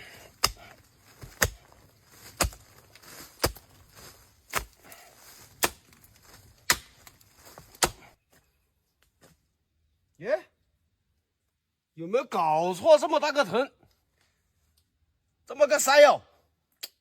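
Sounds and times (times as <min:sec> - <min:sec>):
spade chopping into wet earth: 0:00.3 - 0:03.8, 0:04.5 - 0:04.8, 0:05.5 - 0:06.0, 0:06.6 - 0:07.1, 0:07.7 - 0:08.1.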